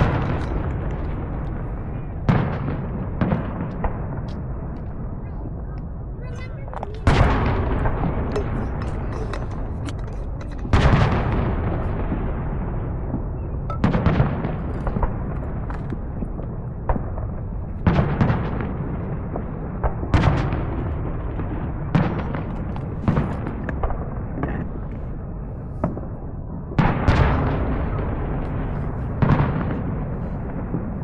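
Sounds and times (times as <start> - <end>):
distant explosions rumbling: 0.0 - 31.0
firework bangs: 0.0 - 31.0.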